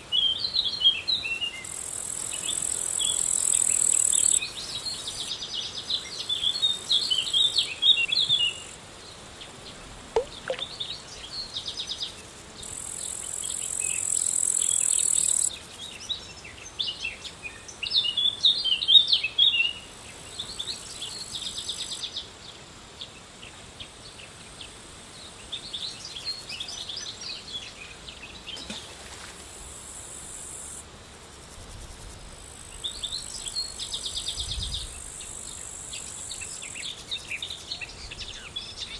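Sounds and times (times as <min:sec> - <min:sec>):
insect chorus trilling: 0:00.1 - 0:08.8, 0:10.2 - 0:22.2, 0:24.6 - 0:38.9
birds chirping: 0:10.2 - 0:10.9.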